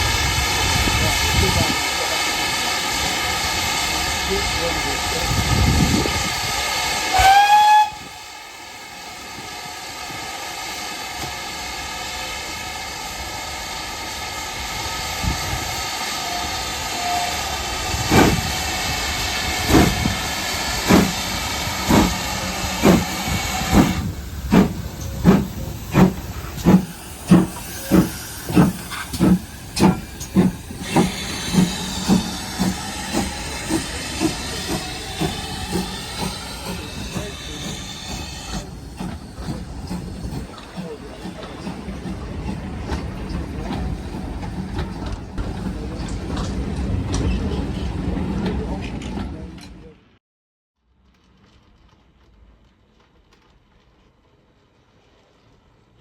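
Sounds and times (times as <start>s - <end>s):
steam hissing: 0.0s - 47.3s
locomotive exhaust chuffs: 0.0s - 49.5s
steam locomotive whistle: 5.2s - 8.5s, 14.6s - 24.0s.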